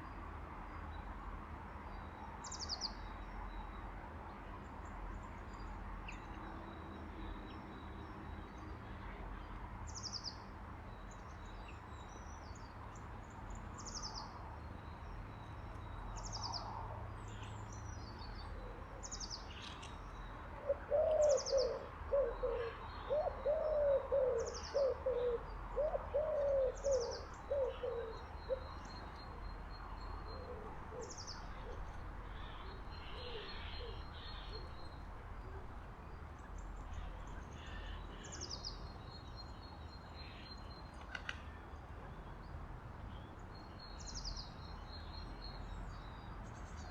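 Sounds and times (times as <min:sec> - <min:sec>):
pigeon cooing: 0:20.7 - 0:28.6.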